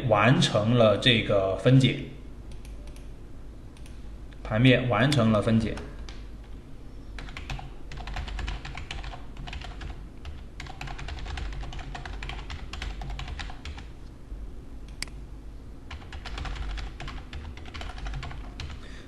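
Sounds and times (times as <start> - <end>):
steady low hum: 0.0 - 19.0
keyboard typing clicks: 2.5 - 3.1.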